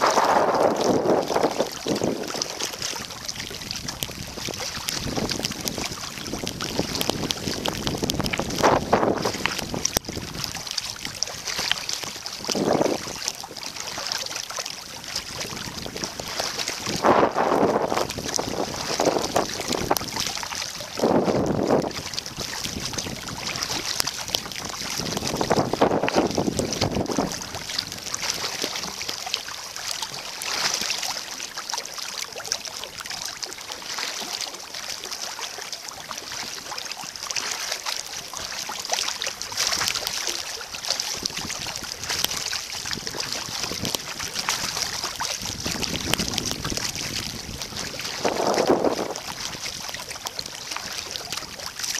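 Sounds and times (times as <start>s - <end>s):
wind buffeting microphone: 0.0s - 13.9s, 14.9s - 29.1s, 41.0s - 51.8s
paddle water splashing and dripping: 0.0s - 51.9s.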